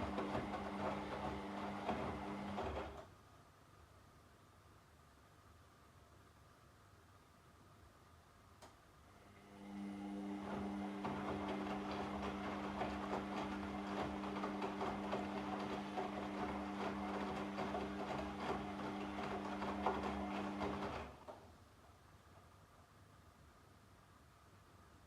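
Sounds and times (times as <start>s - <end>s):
washing machine motor hum: 0.0s - 3.0s, 9.2s - 21.4s.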